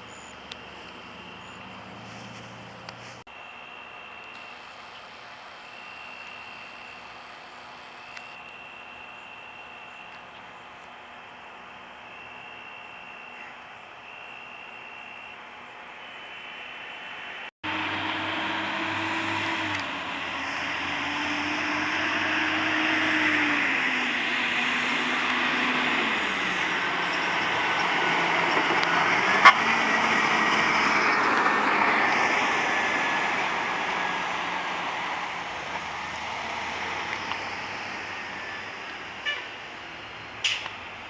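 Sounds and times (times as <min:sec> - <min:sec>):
vehicle engine and road noise: 0:00.0 - 0:41.0
sharp click: 0:40.4 - 0:40.8.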